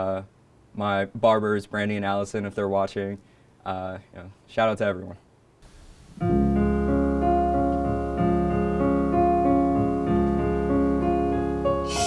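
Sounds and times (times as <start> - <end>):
keyboard playing slow ballad chords: 6.2 - 11.9.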